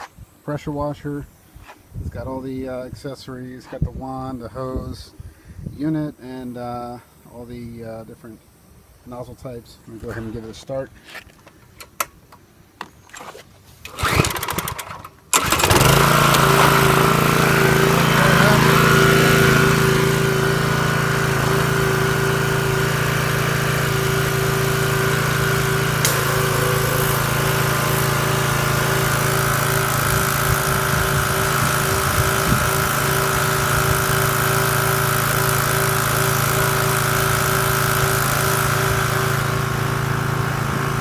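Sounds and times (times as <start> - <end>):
pressure washer engine running: 13.9 - 41.0.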